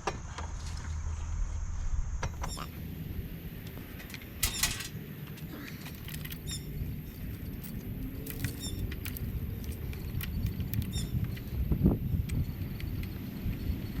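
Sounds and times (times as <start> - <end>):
low steady rumble: 0.0 - 14.0
bird calling: 2.4 - 14.0
chainsaw chain clicking and rattling: 5.9 - 11.4.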